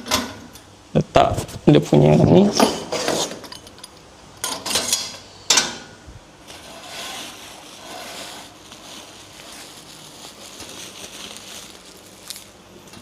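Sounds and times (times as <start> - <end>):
soft rustling: 7.3 - 12.4.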